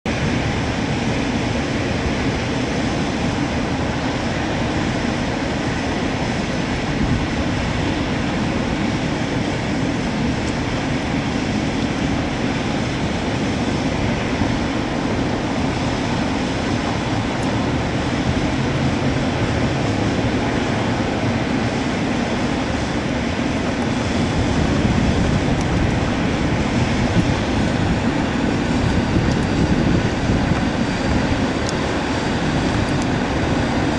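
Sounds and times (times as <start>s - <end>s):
vehicle engine drone: 0.1s - 33.9s.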